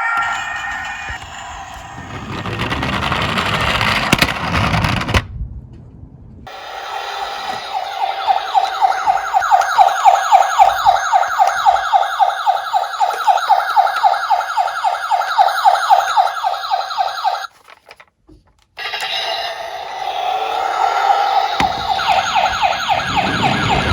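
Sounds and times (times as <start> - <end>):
toy siren fast yelp: 0.0 - 1.8, 6.5 - 17.5, 18.8 - 23.9
steady siren tone: 0.0 - 2.6, 6.5 - 17.5, 18.8 - 23.9.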